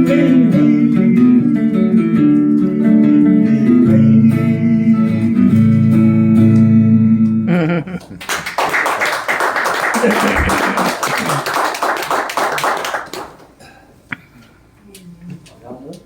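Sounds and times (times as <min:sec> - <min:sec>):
acoustic guitar strumming chords: 0:00.0 - 0:07.9
audience applause: 0:08.0 - 0:13.5.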